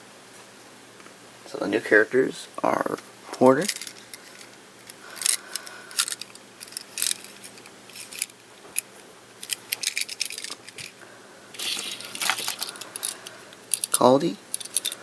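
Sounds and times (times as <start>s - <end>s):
toy train clicks and clinks: 3.6s - 11.0s, 11.6s - 15.0s.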